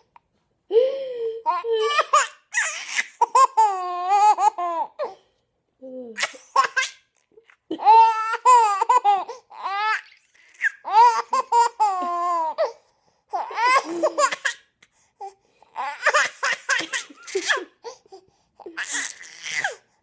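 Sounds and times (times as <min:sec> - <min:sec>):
baby laughing: 0:01.4 - 0:05.0, 0:06.2 - 0:12.7, 0:13.4 - 0:14.7, 0:15.8 - 0:18.0, 0:18.6 - 0:19.8.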